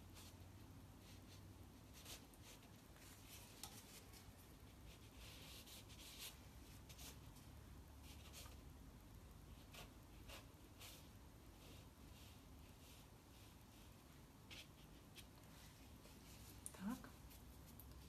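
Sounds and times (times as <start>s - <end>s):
brush swishing across paper: 1.0s - 8.6s, 9.5s - 18.0s.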